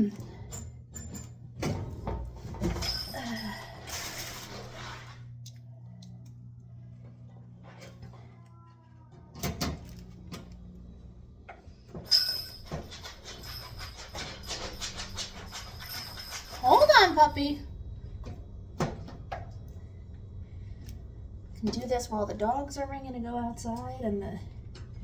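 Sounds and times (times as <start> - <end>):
steady low hum: 0.0 - 25.0
metal parts scraping and knocking: 12.1 - 17.0.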